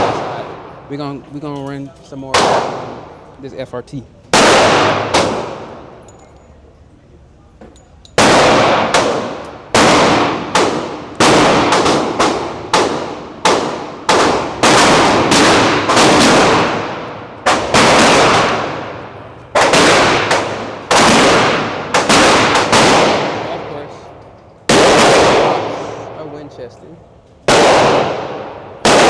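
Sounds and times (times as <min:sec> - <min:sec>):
handgun shots echoing: 0:04.3 - 0:06.2, 0:08.1 - 0:26.0, 0:27.5 - 0:29.0.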